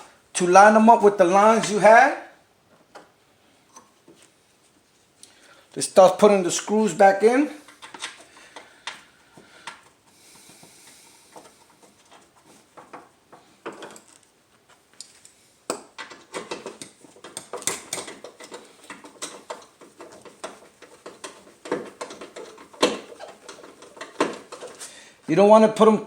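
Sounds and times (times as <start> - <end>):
hand ratchet clicking: 15.8 - 24.9.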